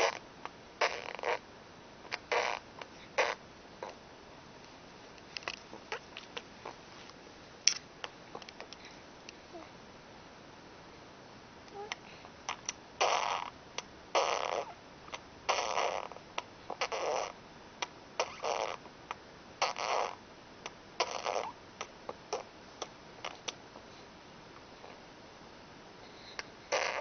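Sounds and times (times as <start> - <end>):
baby making breathy noises: 11.7 - 13.2.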